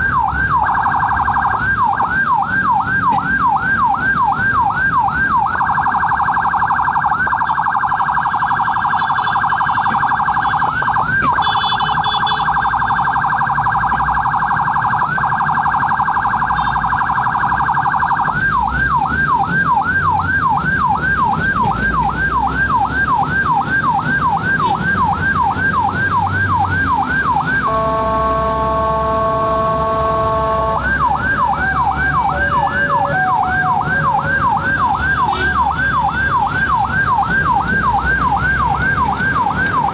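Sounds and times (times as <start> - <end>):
ambulance siren: 0.0 - 39.9
engine and road rumble: 0.0 - 39.9
vehicle horn blast: 11.4 - 12.5, 27.6 - 31.0.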